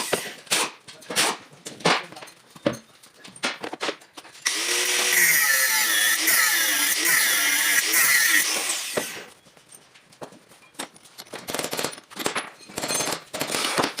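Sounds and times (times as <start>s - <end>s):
high-pitched power tool motor: 4.4s - 9.3s.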